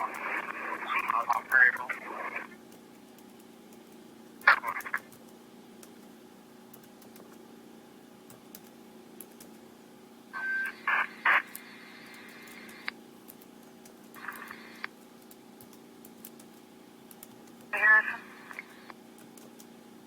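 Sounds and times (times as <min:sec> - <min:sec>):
radio squelch crackling: 0:00.0 - 0:02.6, 0:04.4 - 0:05.2, 0:10.4 - 0:13.0, 0:14.1 - 0:15.0, 0:17.6 - 0:19.0
radio low hum and hiss: 0:00.0 - 0:02.7, 0:04.4 - 0:05.2, 0:10.2 - 0:13.1, 0:14.1 - 0:15.0, 0:17.6 - 0:19.0
short radio tone: 0:10.4 - 0:11.5.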